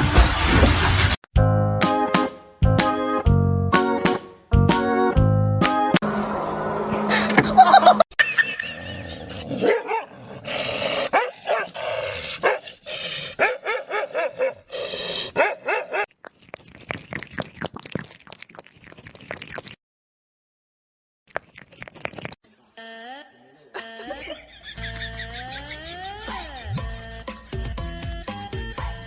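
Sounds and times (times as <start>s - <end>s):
dog barking and yipping: 9.6s - 10.1s, 11.1s - 11.8s, 12.4s - 12.7s, 13.4s - 14.7s, 15.3s - 16.1s.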